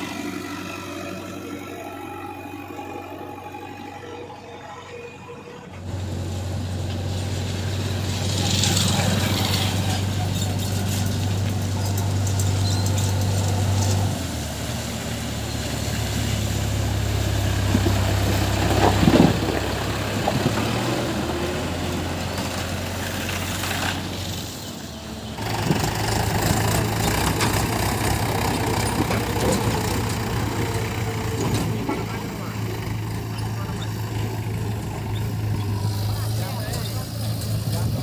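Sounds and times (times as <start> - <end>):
diesel engine of digger running: 0.0 - 38.0
machinery clatter: 6.9 - 14.1, 25.4 - 38.0.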